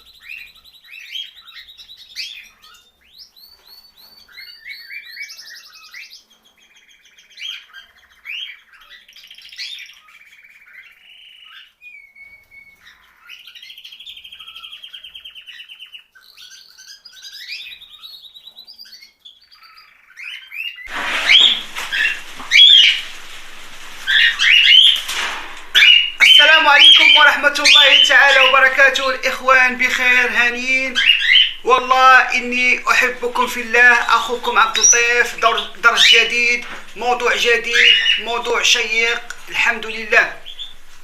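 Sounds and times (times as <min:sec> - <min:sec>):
close bird chirps and calls: 0:00.0 - 0:41.0
songbirds warbling and trilling: 0:00.0 - 0:41.0
steady hiss: 0:20.9 - 0:41.0.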